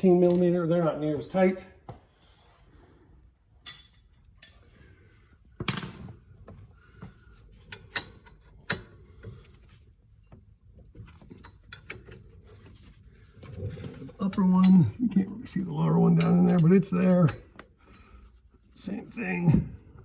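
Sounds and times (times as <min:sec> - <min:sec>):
wrench metallic clicks and clanks: 0:07.6 - 0:09.0.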